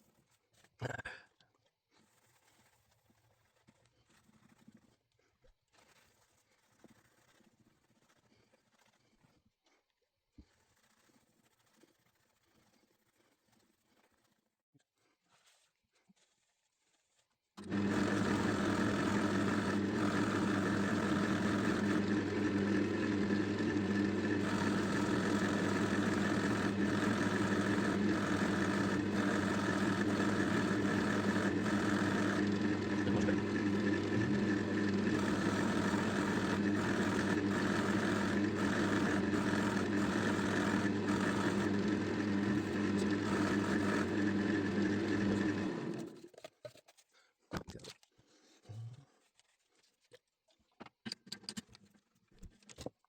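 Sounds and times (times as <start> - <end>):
electric wood lathe humming: 17.6 - 46.2.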